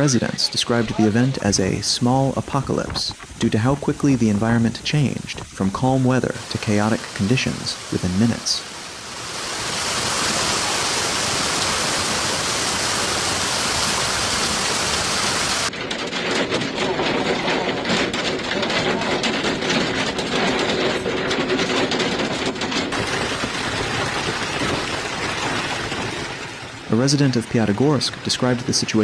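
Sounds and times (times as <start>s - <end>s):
hailstones clattering on hard surfaces: 0.0s - 6.4s, 13.2s - 26.9s
hail and rain hiss: 0.0s - 29.0s.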